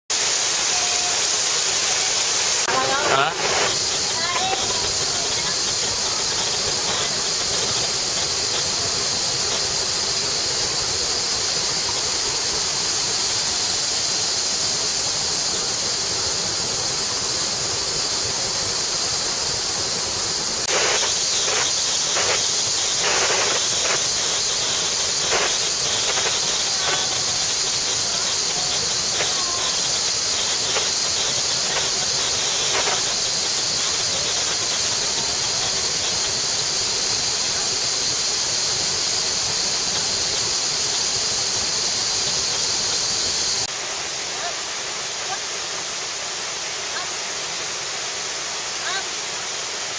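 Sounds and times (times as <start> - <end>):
waterfall rushing: 0.1 - 49.9.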